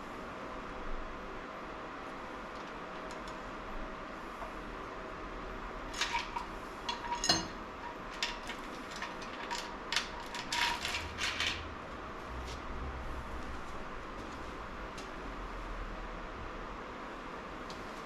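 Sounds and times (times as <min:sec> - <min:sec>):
metal engine parts clinking: 0:05.9 - 0:11.7.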